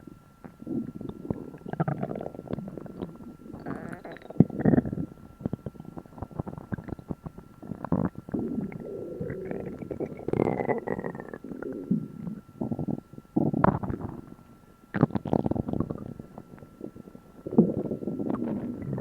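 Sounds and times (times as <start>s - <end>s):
high squeaky whine: 0.0s - 14.3s
stomach growling and gurgling: 0.0s - 19.0s.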